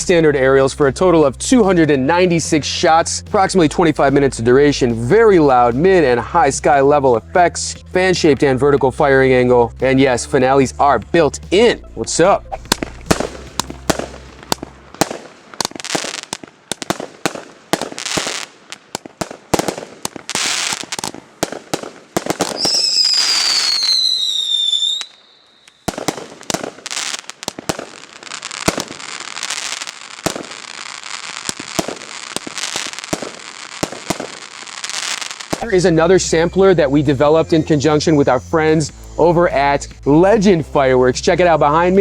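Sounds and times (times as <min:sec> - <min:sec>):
fireworks popping and crackling: 0:12.6 - 0:36.5
falling firework whistle: 0:22.4 - 0:35.7.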